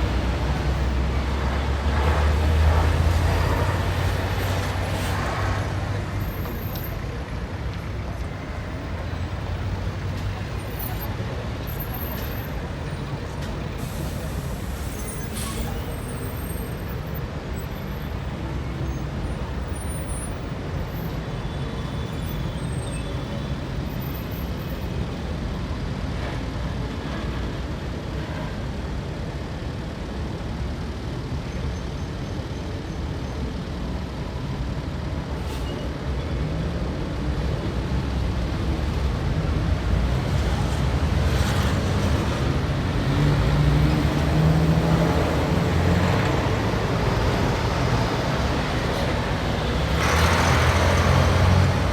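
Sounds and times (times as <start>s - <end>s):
heavy vehicle engine passing: 0.0s - 17.3s, 37.8s - 51.9s
traffic rumble: 0.0s - 51.9s.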